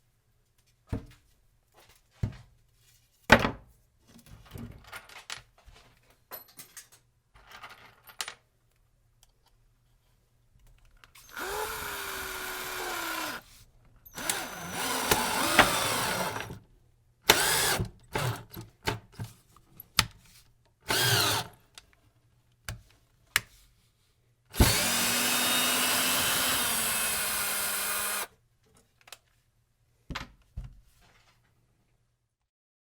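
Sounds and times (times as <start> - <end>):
cordless drill driving screws: 11.2 - 13.5, 14.1 - 16.6, 17.3 - 18.5, 20.9 - 21.6, 24.5 - 28.3.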